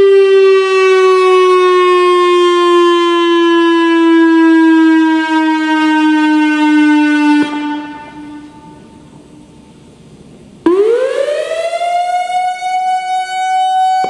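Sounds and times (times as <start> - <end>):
electronic storm siren: 0.0 - 9.7, 10.6 - 14.0.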